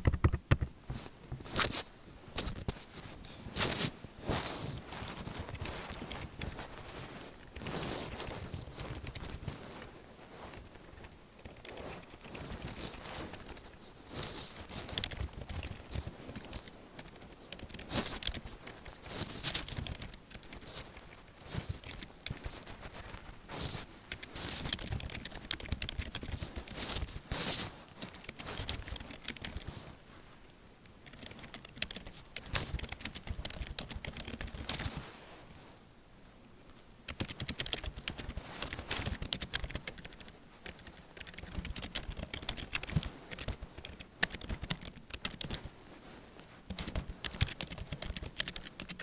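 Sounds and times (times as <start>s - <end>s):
keyboard typing clicks: 0.0s - 0.7s, 37.1s - 38.3s, 46.7s - 49.0s.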